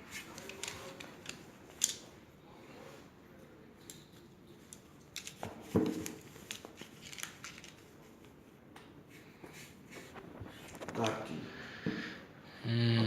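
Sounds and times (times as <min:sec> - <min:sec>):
plastic shrink-wrap rustling: 0:05.2 - 0:08.0.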